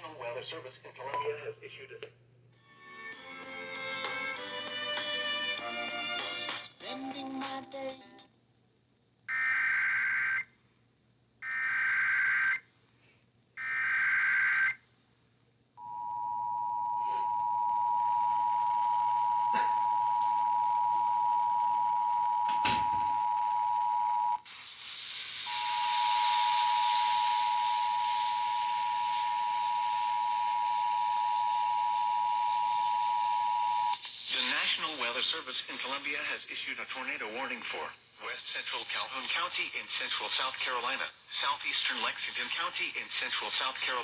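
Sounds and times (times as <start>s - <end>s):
radio hiss: 0.0s - 2.1s, 24.5s - 25.7s, 34.0s - 44.0s.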